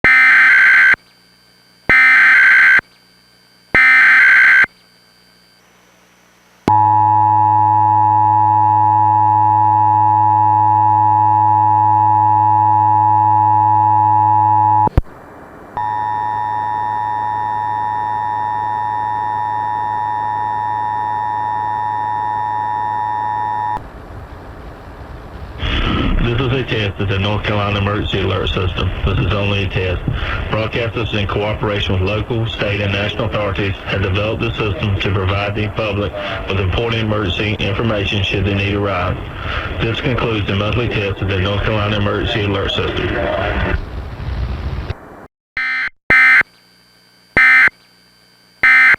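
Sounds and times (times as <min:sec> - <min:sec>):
steady buzzy tone: 0:00.0 - 0:48.9
data warble bursts: 0:03.8 - 0:04.7
two-tone attention signal: 0:03.8 - 0:04.7, 0:45.6 - 0:46.4, 0:47.4 - 0:47.7, 0:48.6 - 0:48.9.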